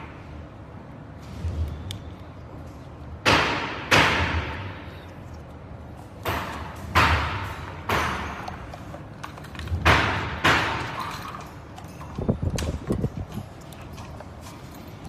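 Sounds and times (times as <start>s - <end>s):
sharp knocks: 3.2s - 4.8s, 6.2s - 8.6s, 9.8s - 11.1s.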